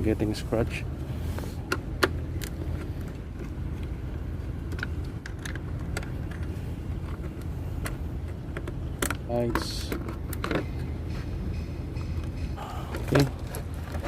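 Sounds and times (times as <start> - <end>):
steady low rumble: 0.0 - 14.0
clicks and knocks of plastic parts: 4.7 - 10.9.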